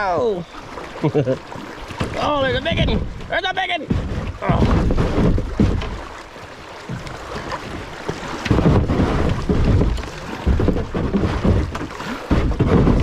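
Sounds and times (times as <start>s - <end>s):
creek water moving: 0.0s - 13.0s
wind buffeting the microphone: 2.0s - 3.3s.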